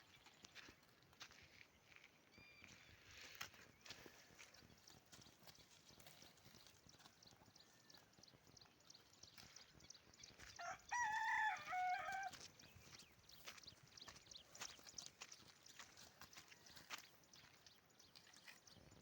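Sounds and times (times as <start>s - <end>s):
rooster crowing: 10.6s - 12.4s.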